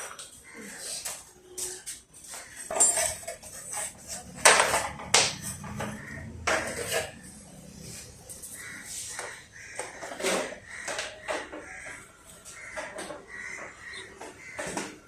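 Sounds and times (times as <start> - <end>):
metal tools clinking: 1.6 - 5.9.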